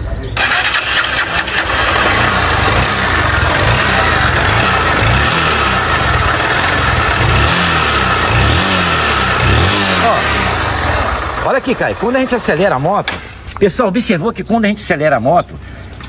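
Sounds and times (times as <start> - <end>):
motorcycle engine revving: 0.4 - 13.2
engine rattle: 0.4 - 13.3.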